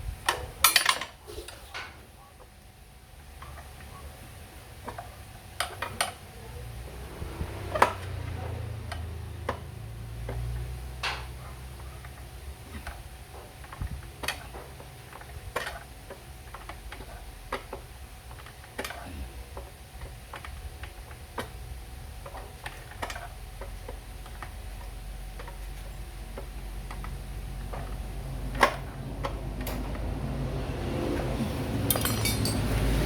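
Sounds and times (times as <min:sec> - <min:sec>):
hand tools clicking and tapping: 0:07.6 - 0:20.6, 0:31.2 - 0:33.0.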